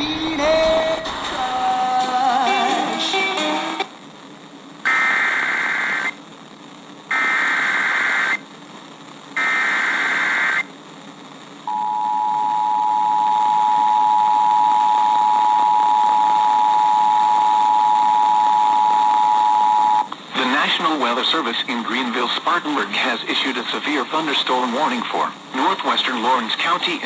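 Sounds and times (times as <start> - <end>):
radio hiss: 0.0 - 27.0
screeching data bursts: 7.1 - 8.4, 9.4 - 10.7
steady attention tone: 11.7 - 20.1.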